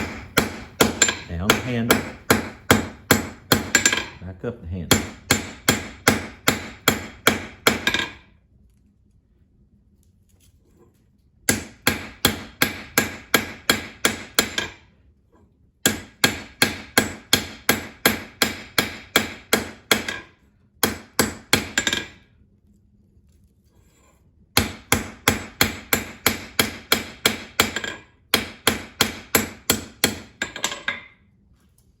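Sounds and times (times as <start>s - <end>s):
hammer ringing on steel on anvil: 0.0s - 4.2s.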